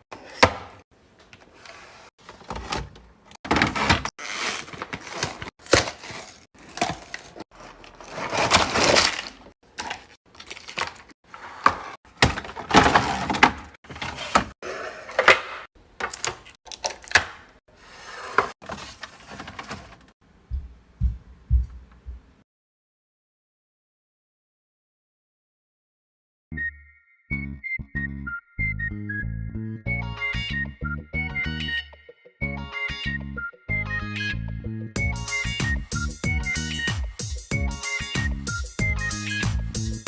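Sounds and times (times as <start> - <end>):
dull low thumps: 20.4 - 22.4.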